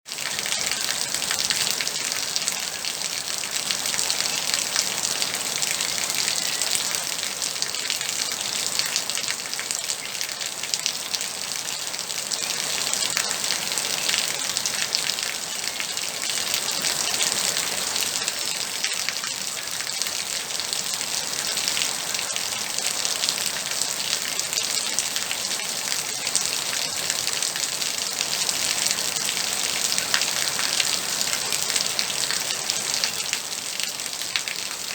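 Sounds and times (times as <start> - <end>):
raindrops pattering on a surface: 0.1 - 34.9
steady rain falling: 0.1 - 34.9.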